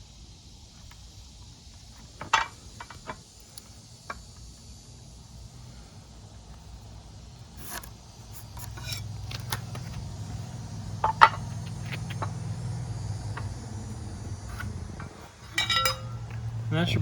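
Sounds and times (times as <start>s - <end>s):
low steady hum: 8.1s - 17.0s
lumber being handled: 14.5s - 16.6s
hand tools clicking and tapping: 15.0s - 16.5s.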